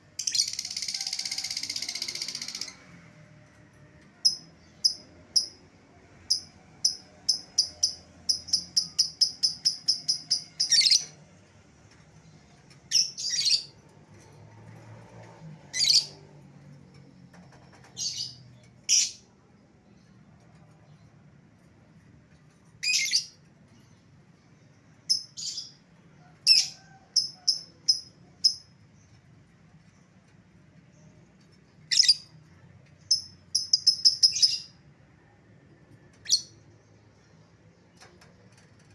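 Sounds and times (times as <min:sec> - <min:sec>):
lovebird chirping and shrieking: 0:15.7 - 0:16.2.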